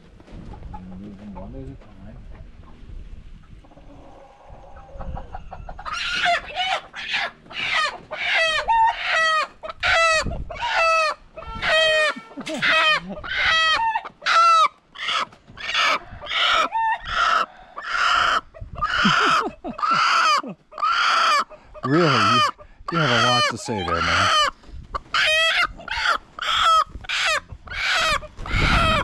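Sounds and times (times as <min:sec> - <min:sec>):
chicken squawking loudly: 0:04.7 - 0:29.0.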